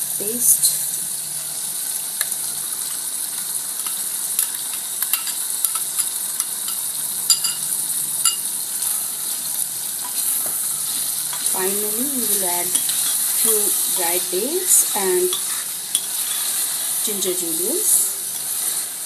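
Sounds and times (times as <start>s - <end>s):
curry sizzling in a pan: 0.0s - 19.0s.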